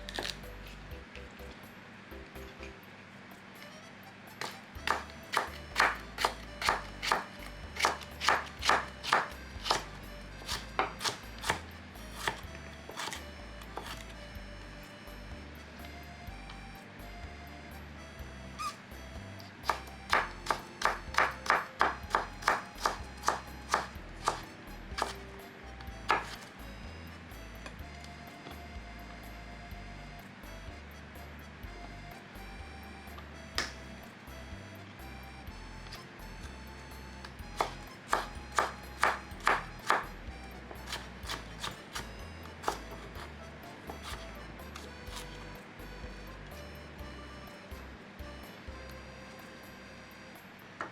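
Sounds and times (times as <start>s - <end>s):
background music: 0.0s - 50.8s
knife chopping on cutting board: 0.1s - 0.4s, 4.4s - 13.2s, 13.8s - 14.1s, 19.7s - 25.2s, 26.1s - 26.5s, 33.6s - 33.8s, 37.6s - 40.0s, 40.8s - 43.0s, 43.8s - 45.4s.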